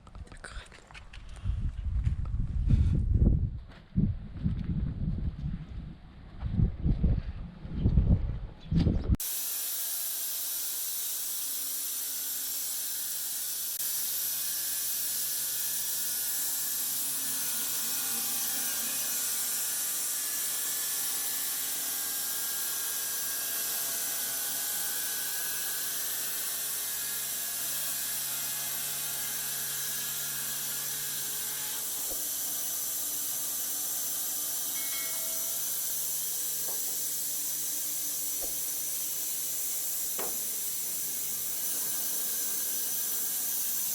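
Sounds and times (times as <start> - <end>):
woodworking machinery running: 9.2 - 43.9.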